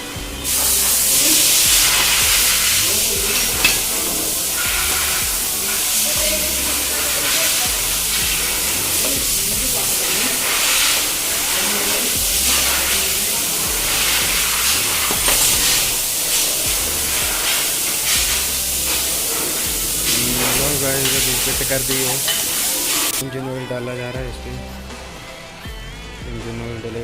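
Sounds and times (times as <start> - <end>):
steady hiss: 0.0 - 23.2.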